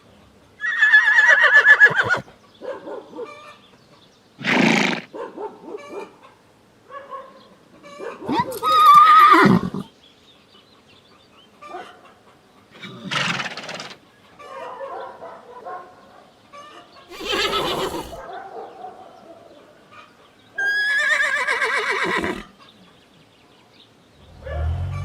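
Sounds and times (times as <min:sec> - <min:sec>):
horses neighing: 0:08.4 - 0:09.8, 0:17.1 - 0:18.2, 0:20.7 - 0:22.5.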